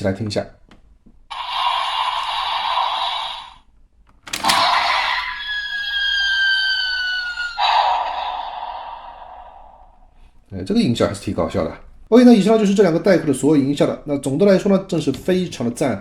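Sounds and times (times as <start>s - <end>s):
falling whistle: 5.2s - 8.6s.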